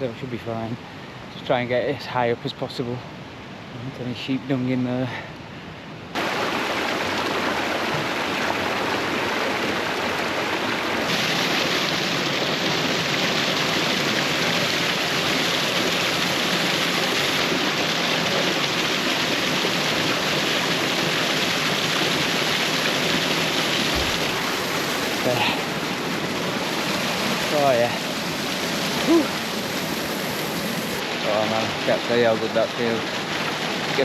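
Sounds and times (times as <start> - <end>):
stream rushing and splashing: 0.0 - 34.0.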